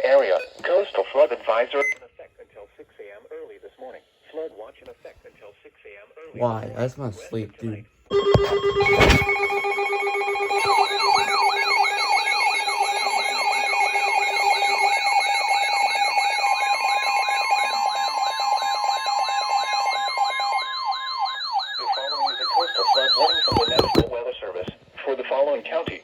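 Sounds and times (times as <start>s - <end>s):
steady alarm tones: 8.1s - 24.1s.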